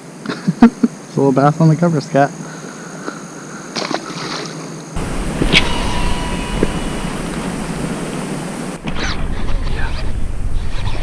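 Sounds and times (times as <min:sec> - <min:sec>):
water noise: 0:03.8 - 0:09.1
rushing wind: 0:04.9 - 0:11.0
wind rumble on microphone: 0:05.0 - 0:11.0.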